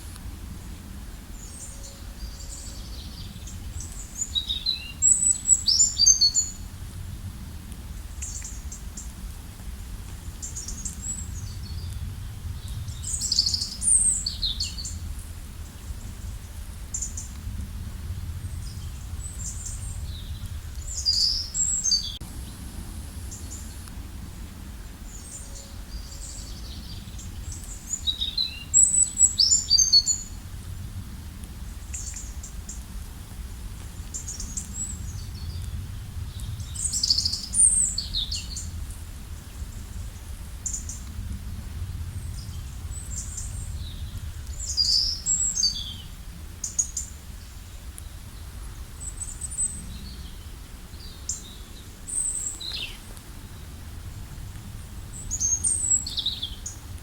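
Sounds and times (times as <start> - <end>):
steady low rush: 14.9 - 27.9.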